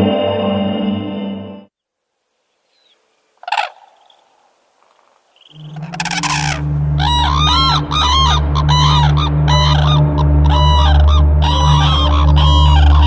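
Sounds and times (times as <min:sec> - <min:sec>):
honking bird calls: 0:02.5 - 0:13.0
steady low hum: 0:05.5 - 0:13.0.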